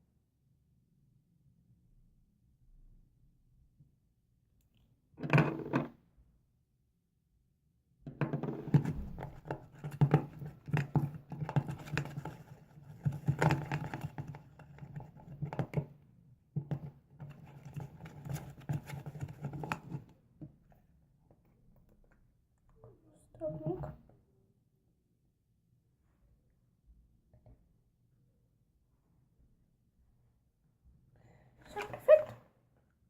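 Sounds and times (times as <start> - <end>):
utensil stirring slime: 8.6 - 15.9, 16.6 - 22.3.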